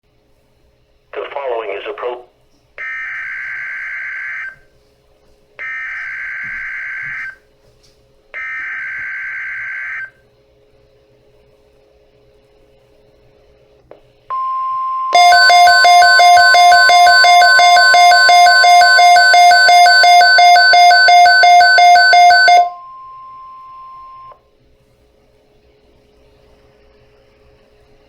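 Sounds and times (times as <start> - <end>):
radio receiver alarm beeping: 14.3 - 24.4
steady warning alarm tone: 14.3 - 24.4.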